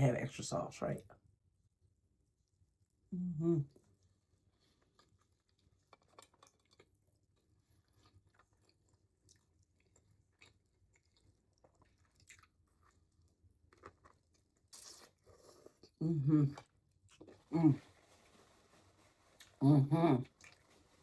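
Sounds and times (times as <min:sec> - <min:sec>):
close chewing: 0:04.0 - 0:19.6, 0:20.2 - 0:21.0.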